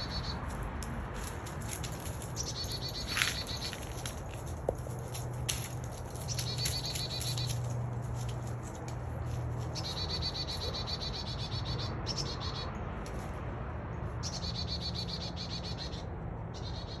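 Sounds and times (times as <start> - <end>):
chickadee calling: 0.0 - 0.5, 2.2 - 4.1, 6.2 - 7.6, 9.6 - 12.8, 14.2 - 17.0.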